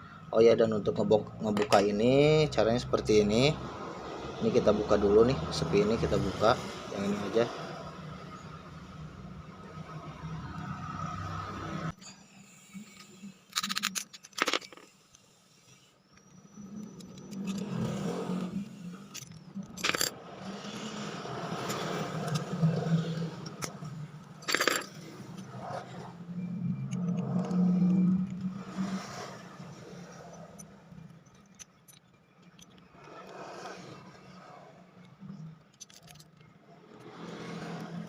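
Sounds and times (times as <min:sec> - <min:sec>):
metal scraping: 0:16.6 - 0:38.0.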